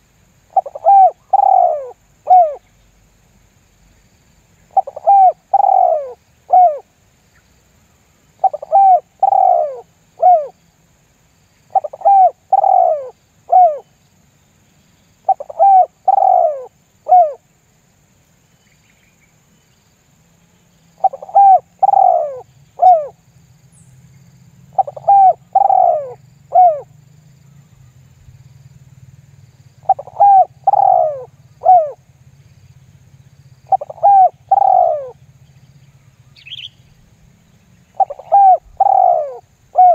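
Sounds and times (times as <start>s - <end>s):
dove cooing: 0.5s - 2.7s, 4.7s - 6.9s, 8.4s - 10.6s, 11.7s - 13.9s, 15.2s - 17.4s, 21.0s - 23.2s, 24.7s - 26.9s, 29.8s - 32.0s, 33.6s - 35.3s, 37.9s - 39.9s.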